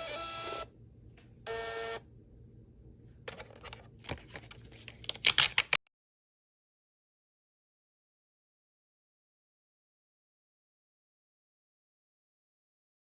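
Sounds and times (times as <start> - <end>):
label printer motor whirring: 0.0 - 0.7.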